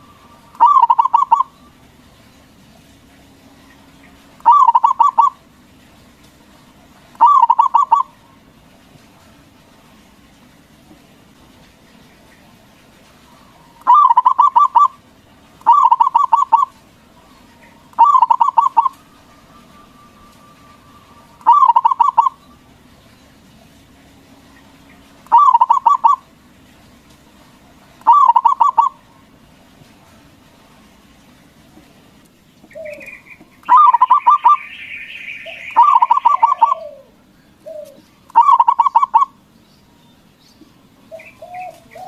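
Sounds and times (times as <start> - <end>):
dove cooing: 0.0 - 1.8, 3.7 - 5.4, 6.8 - 8.6, 13.0 - 23.0, 24.3 - 26.4, 27.7 - 29.4, 32.6 - 39.4, 41.1 - 42.0.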